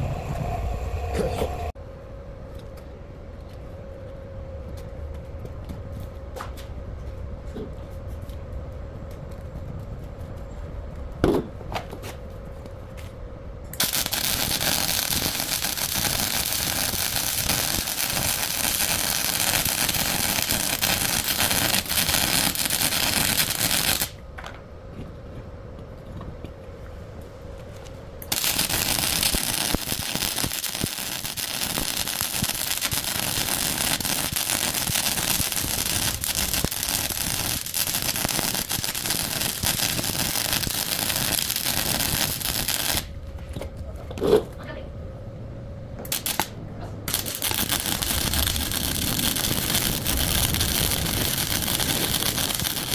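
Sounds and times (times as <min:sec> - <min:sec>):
arc welding crackling: 0:13.7 - 0:24.3, 0:28.2 - 0:43.2, 0:46.1 - 0:52.9.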